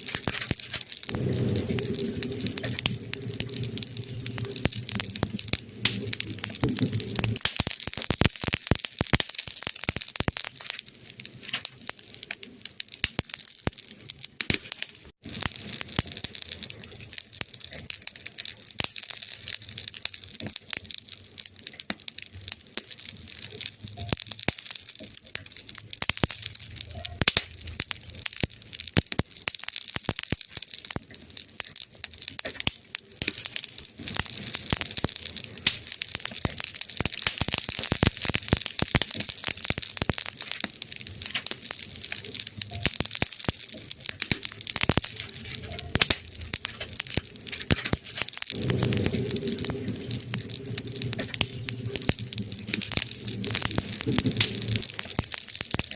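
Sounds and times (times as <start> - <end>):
wood fire crackling: 0.0 - 55.9.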